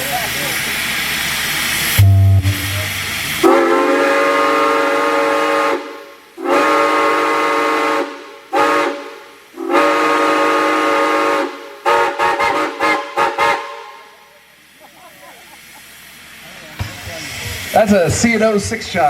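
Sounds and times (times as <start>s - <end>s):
steam hissing: 0.0s - 19.0s
steam whistle blasts: 1.9s - 14.1s.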